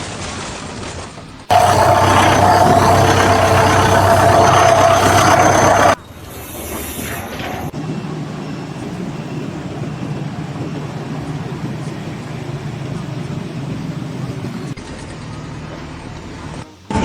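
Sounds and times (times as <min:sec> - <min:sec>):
vehicle engine running: 0:01.5 - 0:06.0.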